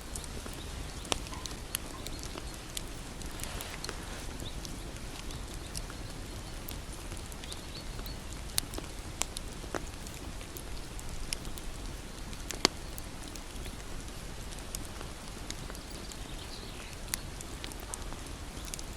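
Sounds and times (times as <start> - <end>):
wood fire crackling: 0.0 - 18.9.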